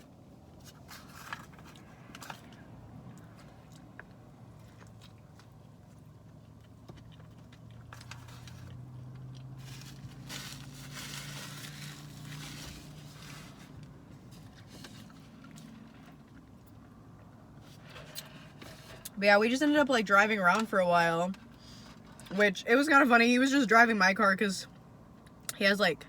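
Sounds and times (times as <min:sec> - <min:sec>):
chewing and crunching food: 0:00.0 - 0:19.2.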